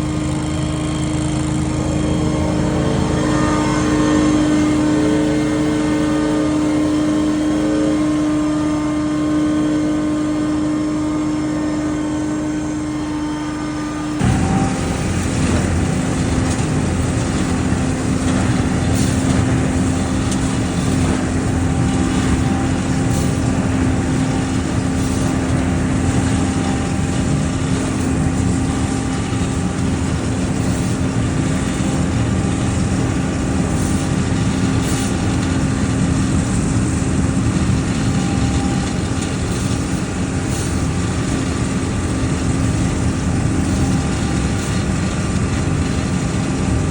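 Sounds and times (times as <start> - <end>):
debris blower engine running: 0.0 - 46.9
rush of blown air: 1.8 - 9.0.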